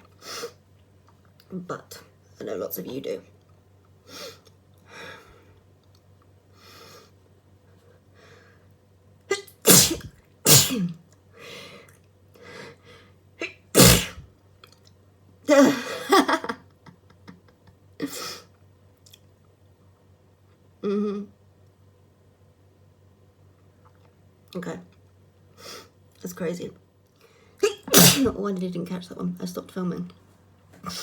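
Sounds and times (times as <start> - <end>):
person sneezing: 9.3 - 10.9, 13.4 - 14.2, 27.6 - 28.4.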